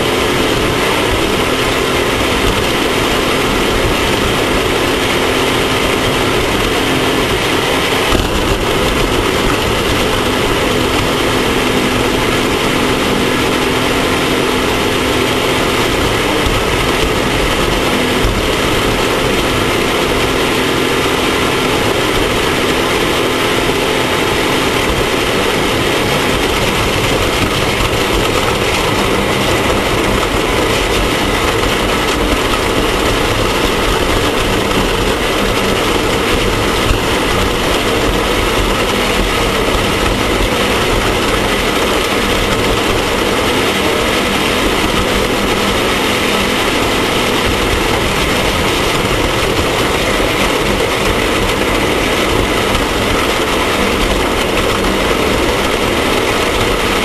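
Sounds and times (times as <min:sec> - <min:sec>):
race vehicle engine running: 0:00.0 - 0:57.0.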